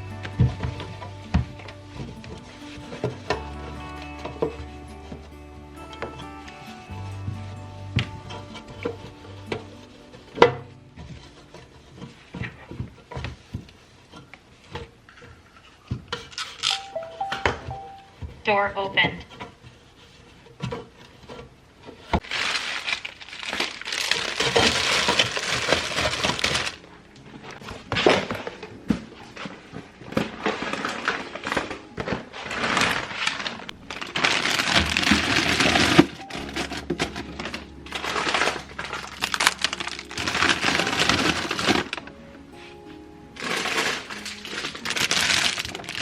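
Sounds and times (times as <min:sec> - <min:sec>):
plastic packaging crinkling: 0:15.4 - 0:18.1, 0:22.0 - 0:42.7, 0:43.3 - 0:46.0.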